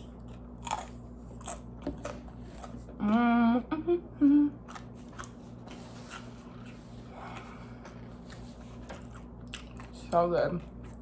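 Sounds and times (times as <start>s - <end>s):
woman humming with mouth full: 3.0s - 4.6s.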